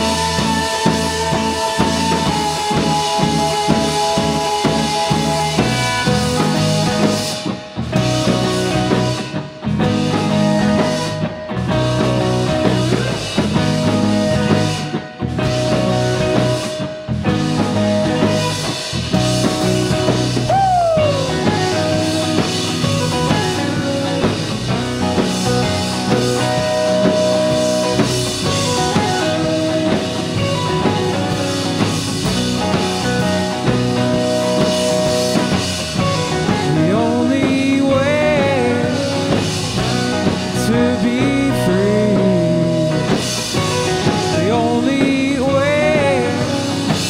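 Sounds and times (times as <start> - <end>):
drum kit: 0.0 - 47.0
rock band playing instrumental: 0.0 - 47.0.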